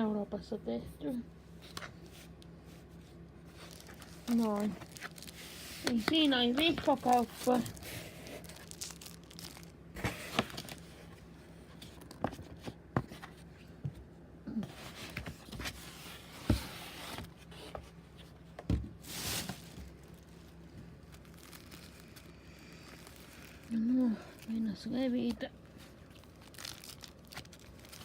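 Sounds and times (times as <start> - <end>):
packaging crinkling and rustling: 3.4 - 13.4, 19.0 - 28.0.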